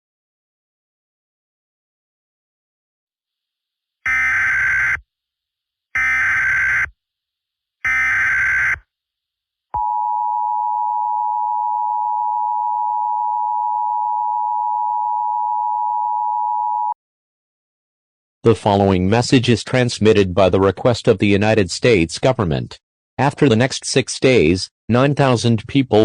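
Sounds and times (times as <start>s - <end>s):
harsh data tone bursts: 4.1s - 5.0s, 7.9s - 8.8s.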